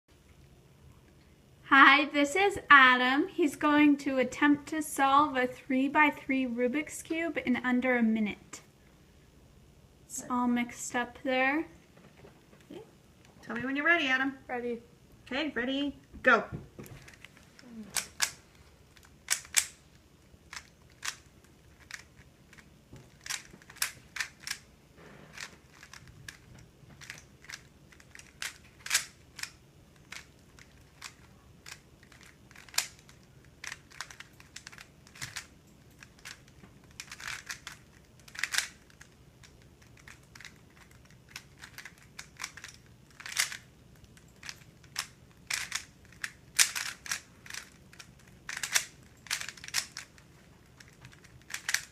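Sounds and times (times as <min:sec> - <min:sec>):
puzzle cube clicking: 0:17.0 - 0:24.7, 0:25.3 - 0:51.9.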